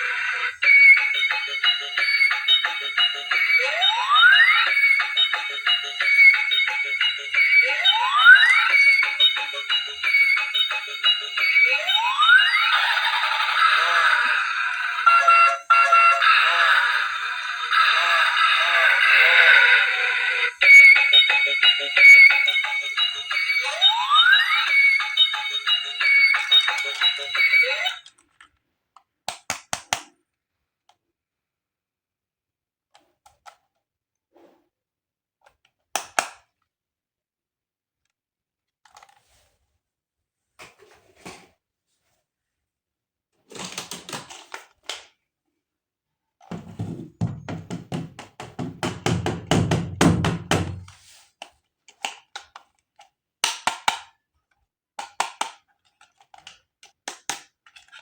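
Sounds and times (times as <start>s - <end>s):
plastic toys clicking: 28.0s - 30.2s, 51.4s - 58.0s.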